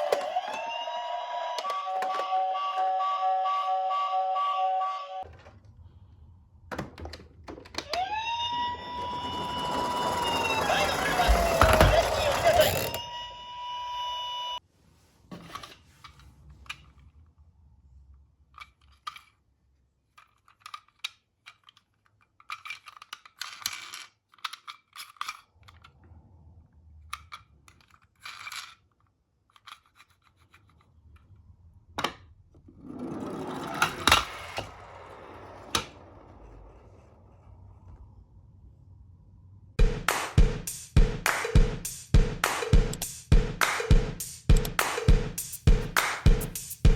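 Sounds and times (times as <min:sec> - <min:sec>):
toy cars clicking and rattling: 0:08.8 - 0:13.0, 0:18.4 - 0:25.9, 0:27.0 - 0:30.9, 0:32.8 - 0:36.8.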